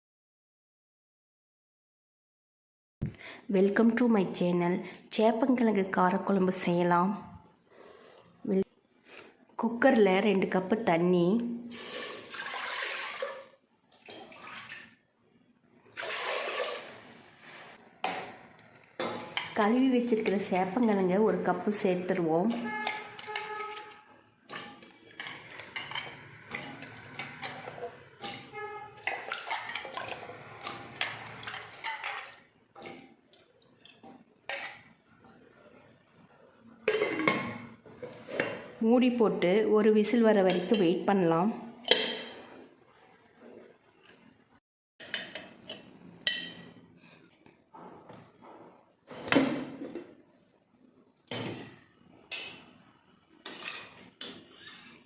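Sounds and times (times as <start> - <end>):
water pouring into a pot: 11.7 - 14.9, 15.9 - 17.3, 29.0 - 34.0
pieces splashing into water: 28.2 - 34.0.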